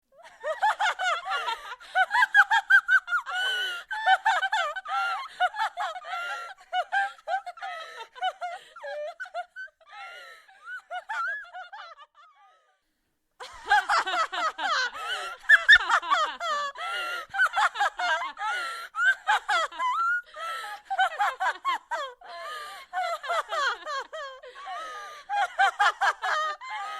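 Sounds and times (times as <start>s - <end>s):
woman laughing wildly: 0.2s - 12.7s, 13.4s - 26.9s.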